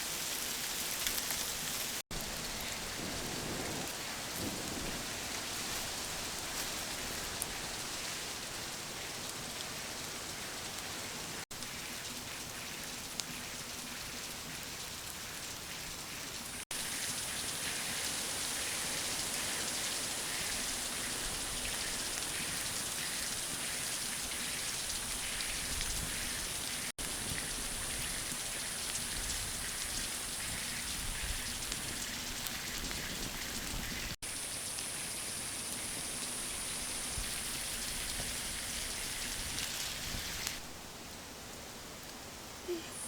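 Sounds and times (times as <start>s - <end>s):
dense hiss with fine crackle: 0.0s - 43.0s.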